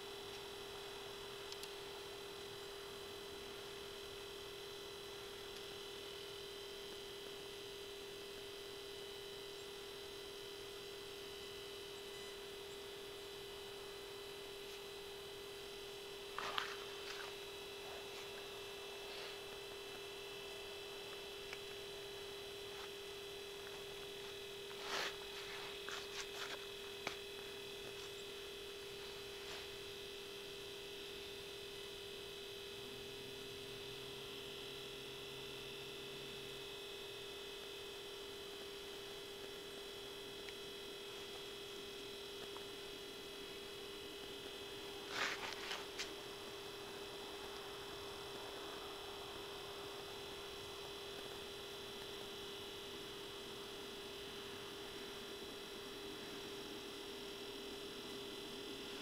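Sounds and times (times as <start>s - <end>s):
steady hum: 0.0s - 59.0s.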